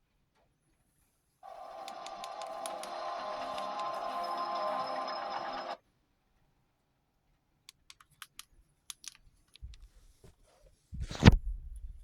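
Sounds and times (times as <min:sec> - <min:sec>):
music: 0:01.4 - 0:05.8.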